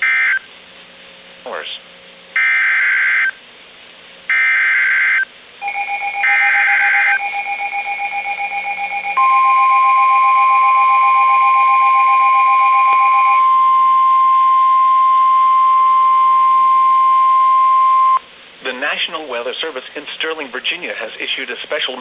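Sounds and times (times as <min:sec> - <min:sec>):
steady high warning tone: 0:04.3 - 0:18.2.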